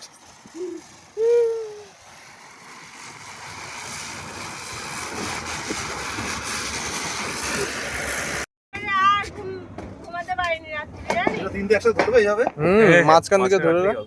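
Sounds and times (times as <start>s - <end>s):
ground firework hissing sparks: 0.0s - 8.5s.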